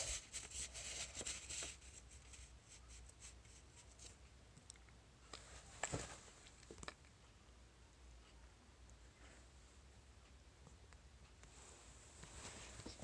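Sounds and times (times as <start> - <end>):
paper rustling and scraping: 0.0 - 2.5.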